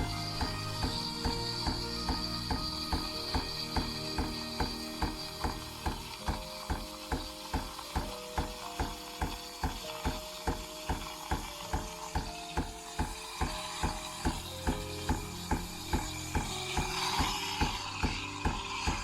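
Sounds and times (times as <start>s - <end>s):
slow melody of held notes: 0.0s - 19.0s
ticking beat: 0.0s - 19.0s.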